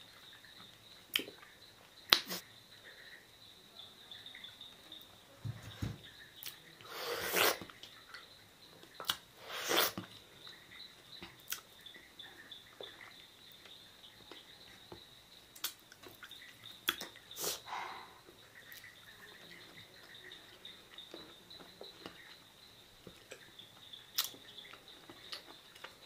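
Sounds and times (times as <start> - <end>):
chewing clicks: 0.7 - 1.5, 7.3 - 9.2, 11.2 - 11.7, 12.8 - 17.6, 24.1 - 26.0.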